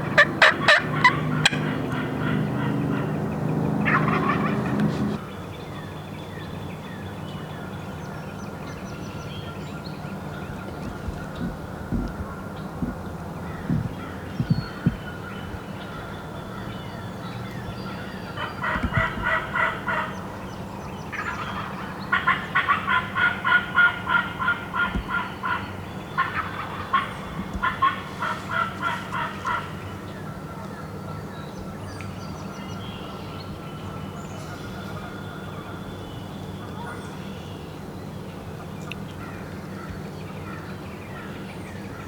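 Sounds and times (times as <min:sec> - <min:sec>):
turkey calling: 0:00.0 - 0:05.2, 0:21.1 - 0:30.0
low knocks: 0:10.5 - 0:15.6.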